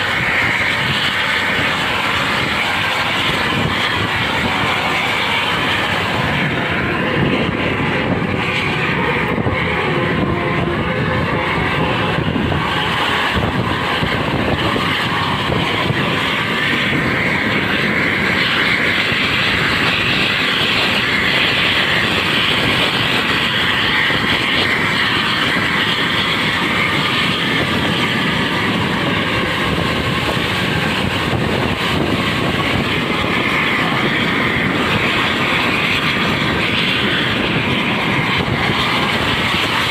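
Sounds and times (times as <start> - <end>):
vehicle engine and road noise: 0.0 - 39.9.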